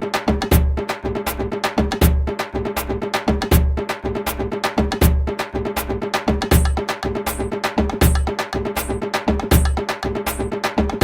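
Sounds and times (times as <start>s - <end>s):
treble drum ringing strokes: 6.5s - 10.6s.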